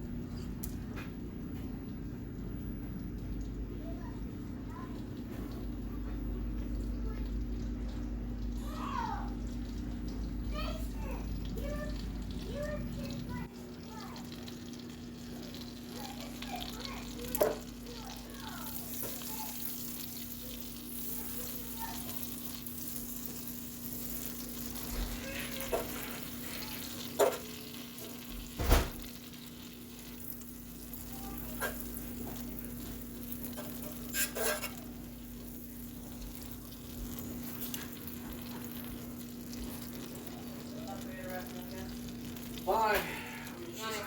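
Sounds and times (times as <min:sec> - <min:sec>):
steady low hum: 0:00.0 - 0:25.3
food sizzling in a pan: 0:03.4 - 0:44.0.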